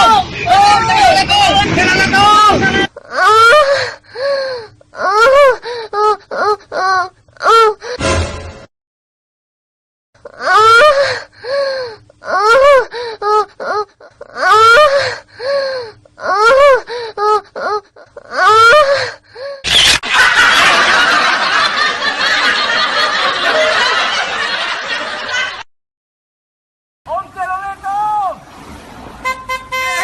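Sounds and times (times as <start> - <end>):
loud rushing noise: 0.0 - 2.9
high-pitched voice squealing: 19.6 - 20.1.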